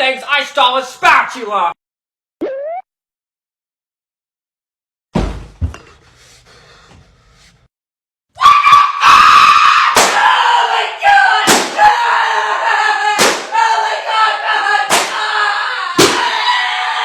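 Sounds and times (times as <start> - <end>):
long held scream: 8.4 - 12.4, 15.6 - 17.0.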